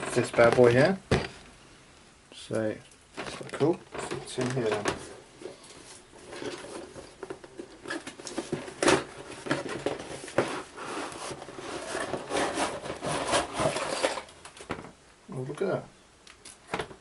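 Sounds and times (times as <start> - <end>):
rummaging through a box: 3.2 - 14.4.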